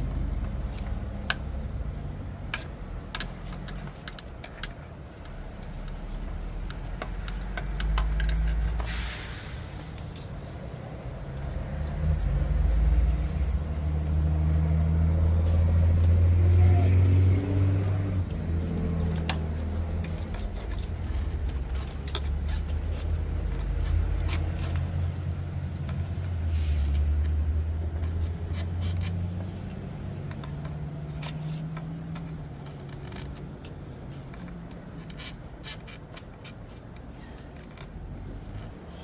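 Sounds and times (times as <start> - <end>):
tools clicking and tapping: 0.0 - 8.9, 18.2 - 38.8
engine rumble: 0.0 - 39.0.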